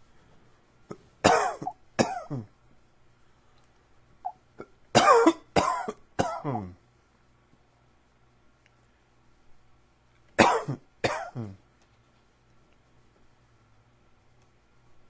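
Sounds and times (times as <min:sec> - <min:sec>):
man coughing: 0:00.9 - 0:02.5, 0:04.6 - 0:06.8, 0:10.4 - 0:11.6.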